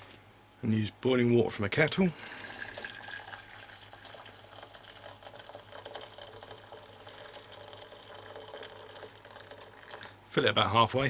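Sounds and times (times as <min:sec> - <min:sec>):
hot water pouring into saucepan: 0:01.9 - 0:10.1.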